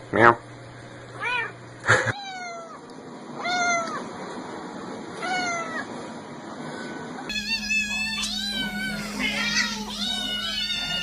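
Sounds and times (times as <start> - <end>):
cat meowing: 5.2 - 5.9, 7.3 - 11.0
steady hum: 7.3 - 11.0.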